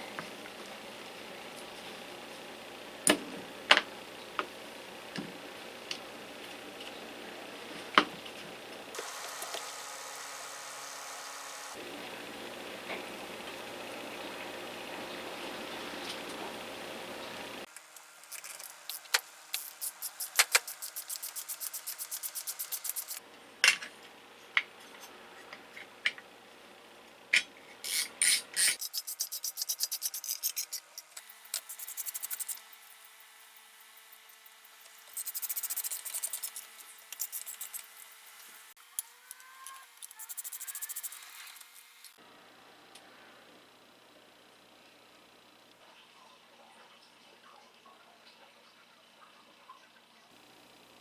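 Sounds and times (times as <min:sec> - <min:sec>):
fast scraping strokes: 0:19.0 - 0:23.2, 0:27.9 - 0:38.7.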